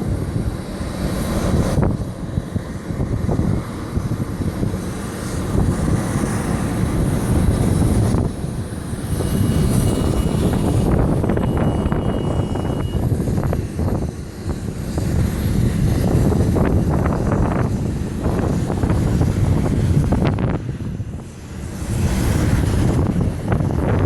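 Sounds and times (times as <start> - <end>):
airplane engine: 0.0 - 24.0
wind buffeting microphone: 0.0 - 24.0.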